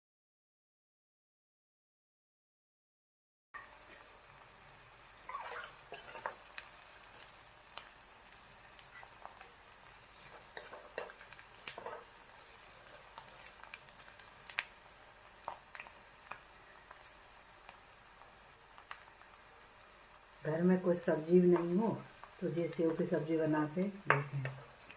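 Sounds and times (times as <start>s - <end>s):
food sizzling in oil: 3.6s - 24.9s
spoon scraping and tapping pan: 5.3s - 6.4s, 10.2s - 12.1s.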